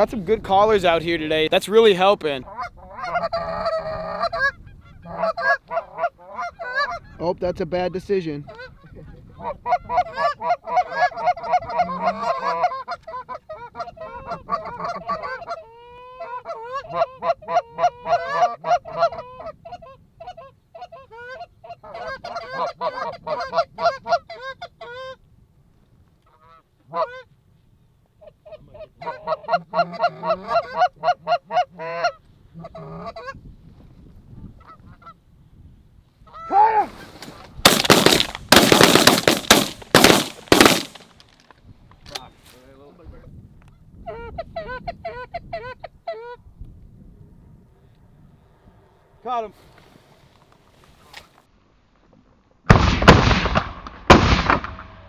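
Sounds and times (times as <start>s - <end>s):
goose honking and clucking: 1.5s - 7.1s, 9.4s - 25.1s, 28.2s - 33.4s
shotgun blasts: 37.7s - 41.1s, 52.7s - 55.0s.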